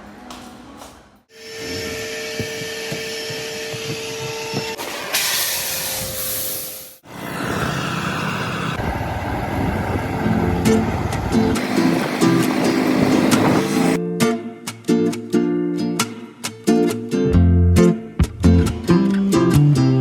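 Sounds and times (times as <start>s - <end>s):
loud hissing water spray: 4.8s - 8.5s, 11.6s - 14.0s
motor humming: 7.1s - 14.0s.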